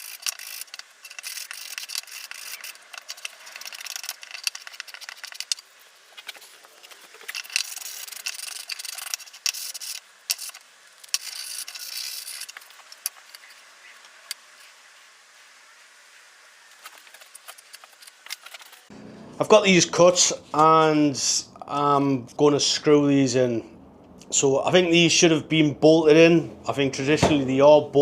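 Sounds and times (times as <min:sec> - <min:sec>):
scraping strokes on wood: 0:00.0 - 0:14.8.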